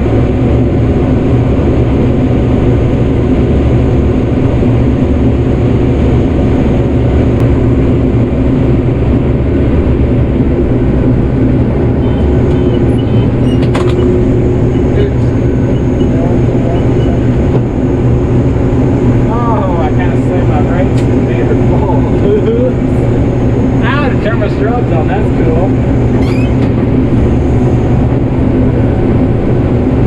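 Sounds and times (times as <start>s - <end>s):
combine harvester drone: 0.0s - 30.0s.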